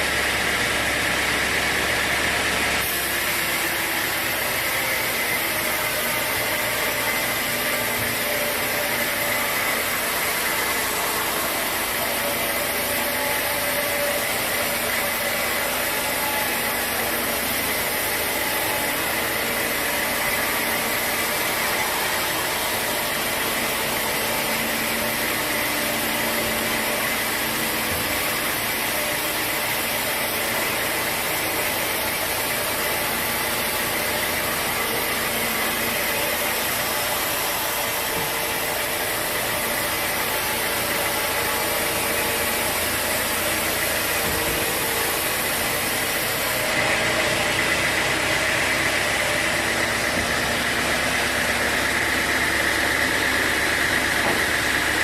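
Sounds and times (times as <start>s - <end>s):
sawmill machinery running: 0.0s - 55.0s.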